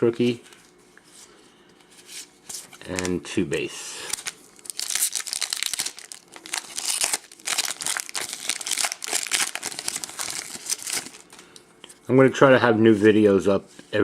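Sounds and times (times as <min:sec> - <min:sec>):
foil wrapper crinkling: 0:04.0 - 0:11.5.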